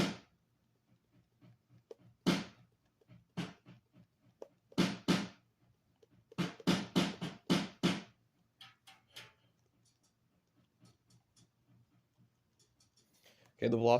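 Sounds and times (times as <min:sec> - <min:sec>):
electronic drum hits: 0:04.8 - 0:05.4, 0:06.4 - 0:08.1.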